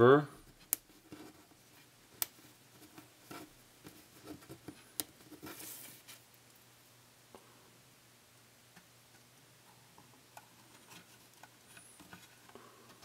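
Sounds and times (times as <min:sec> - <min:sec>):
soft rustle: 0:00.4 - 0:06.7, 0:09.1 - 0:13.0.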